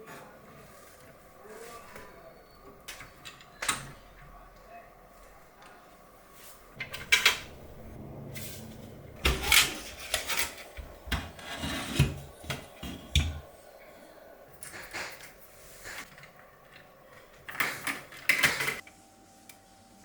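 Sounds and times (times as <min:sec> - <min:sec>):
parts scraping and rubbing: 0:06.3 - 0:13.6, 0:14.5 - 0:18.8
computer parts clicking and knocking: 0:16.0 - 0:18.8.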